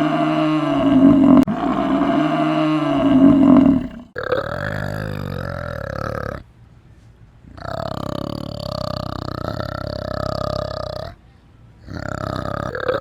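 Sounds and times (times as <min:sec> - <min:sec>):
animal long low rough calls: 0:00.0 - 0:06.4.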